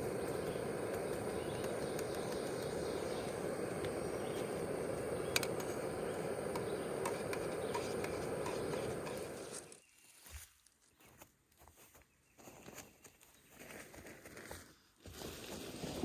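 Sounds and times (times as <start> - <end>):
rushing outdoor noise: 0.0 - 9.8
thin high hum: 0.0 - 9.8
faint clicks: 5.3 - 5.8.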